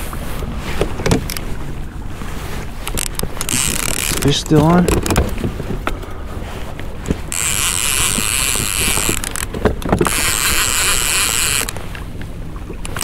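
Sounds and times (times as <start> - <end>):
fishing reel whirring: 2.9 - 5.0, 7.0 - 11.8.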